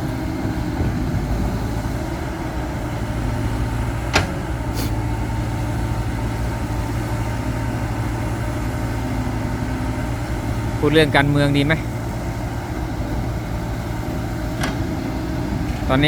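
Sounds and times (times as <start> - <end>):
diesel engine idling: 0.0 - 16.0.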